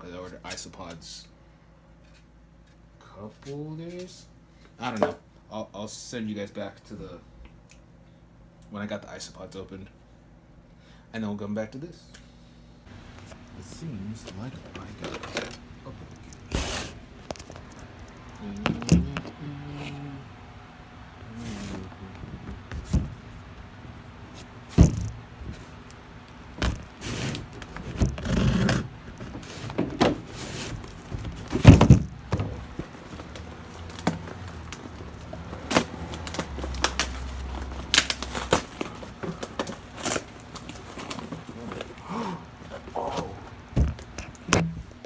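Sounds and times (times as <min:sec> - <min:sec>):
package tearing and crinkling: 0:32.8 - 0:42.0.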